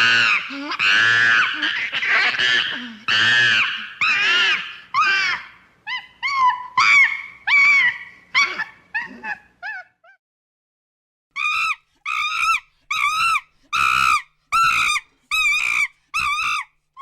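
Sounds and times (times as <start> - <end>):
animal screeching cries: 0.0 - 10.0, 11.4 - 16.8.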